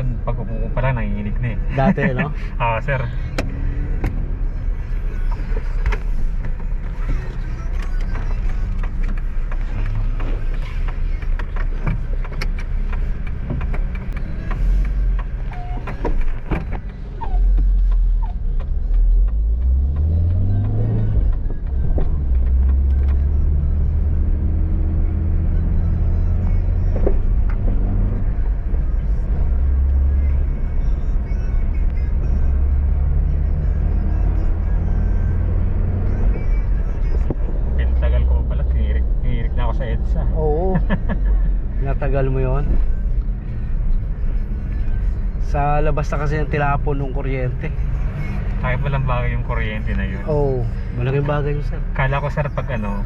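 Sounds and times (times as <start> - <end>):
road noise: 0.0 - 53.0
van engine: 0.0 - 53.0.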